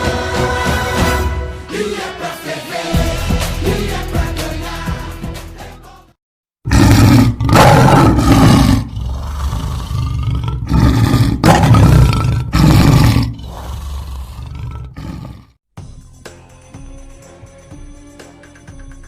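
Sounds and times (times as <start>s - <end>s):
lion roaring: 6.7s - 15.5s
lion growling: 6.7s - 15.6s.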